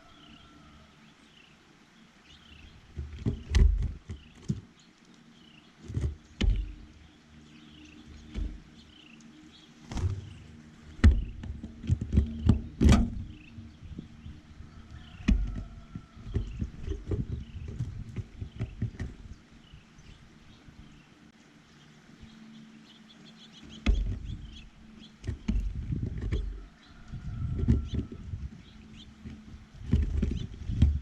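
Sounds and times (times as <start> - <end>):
small birds chirping: 0.0 - 31.0
loud knocks and thumps: 3.0 - 4.6, 5.8 - 6.9, 8.1 - 8.8, 9.9 - 13.6, 15.1 - 19.3, 23.8 - 24.5, 27.3 - 28.3, 29.2 - 31.0.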